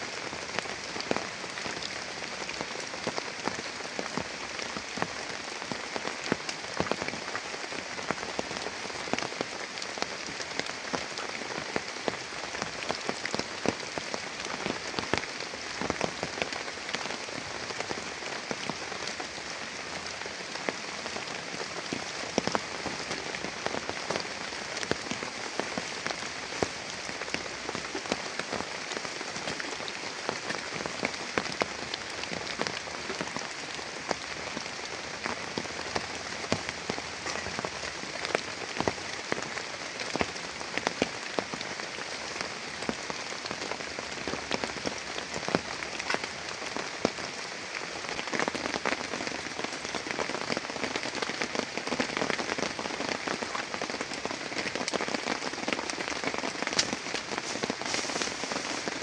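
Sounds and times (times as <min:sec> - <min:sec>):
heavy rain: 0:00.0 - 0:59.0
raindrops ticking on a surface: 0:00.0 - 0:59.0.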